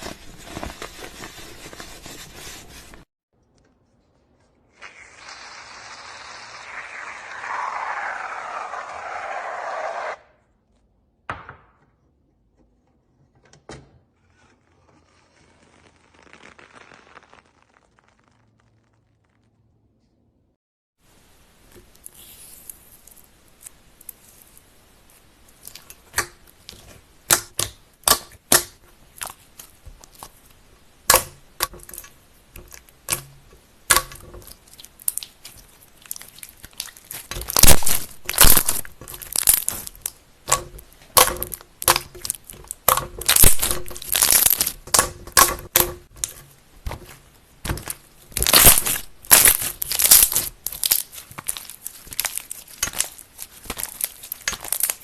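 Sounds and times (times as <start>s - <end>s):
slime popping and crackling: 15.6s - 19.6s, 33.8s - 47.1s, 47.7s - 55.0s.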